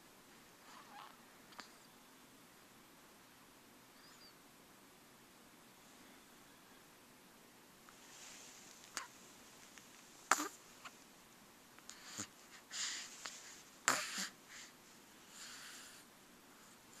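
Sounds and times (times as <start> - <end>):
baby snoring and snuffling: 10.3 - 10.6, 13.8 - 14.7, 15.3 - 16.1.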